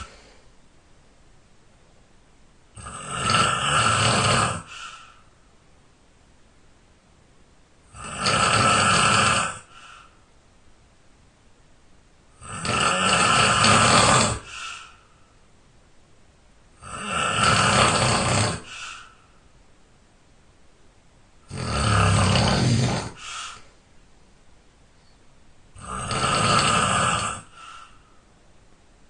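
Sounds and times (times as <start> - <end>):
person snoring loudly: 0.0 - 0.3, 2.8 - 5.1, 7.9 - 10.1, 12.4 - 15.0, 16.8 - 19.1, 21.5 - 23.6, 25.8 - 28.0
faint short breath: 4.7 - 5.4, 14.4 - 15.4, 18.7 - 19.4, 23.2 - 23.8, 27.5 - 28.3.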